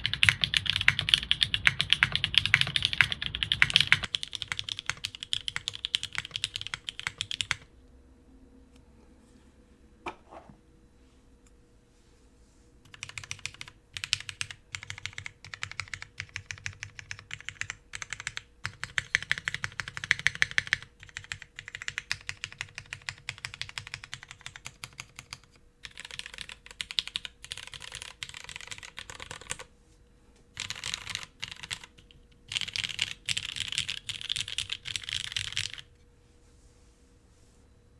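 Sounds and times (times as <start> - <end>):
mechanical keyboard typing: 0.0 - 7.7, 12.9 - 29.7, 30.6 - 35.9
faint steady hum: 0.0 - 37.9.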